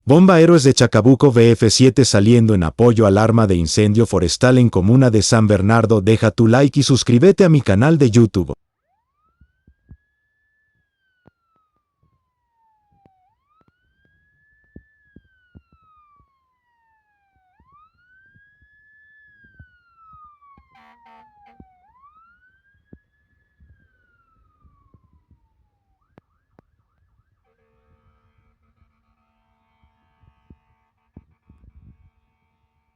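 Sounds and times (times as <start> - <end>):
faint fire engine siren wailing: 8.7 - 32.9
steady siren tone: 8.7 - 32.9.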